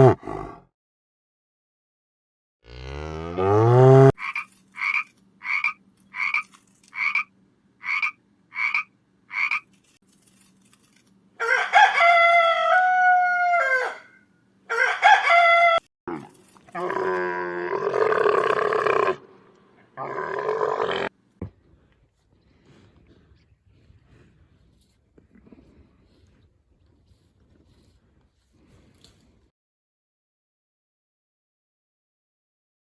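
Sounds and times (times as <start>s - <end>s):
short croaking calls: 4.2s - 9.7s
rooster crowing: 11.4s - 15.9s.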